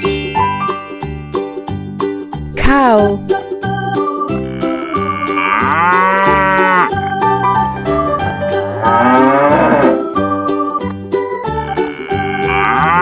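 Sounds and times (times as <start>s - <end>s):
light children's music: 0.0s - 13.0s
cow mooing: 4.5s - 6.9s, 8.7s - 10.0s, 11.9s - 13.0s.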